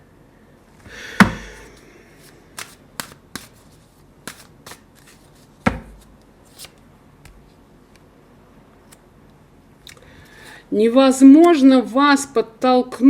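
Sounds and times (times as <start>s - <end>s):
heavy thump: 1.0s - 1.7s
cards flicking and tapping: 2.6s - 3.6s, 4.2s - 7.4s.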